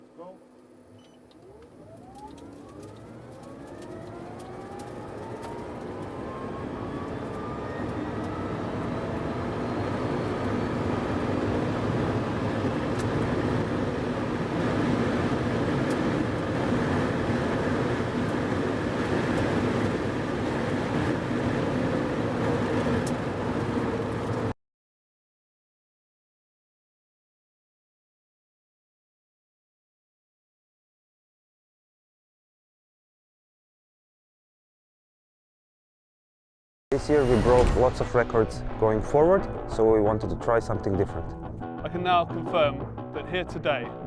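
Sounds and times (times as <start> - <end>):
electric motor whine: 1.2 - 14.0.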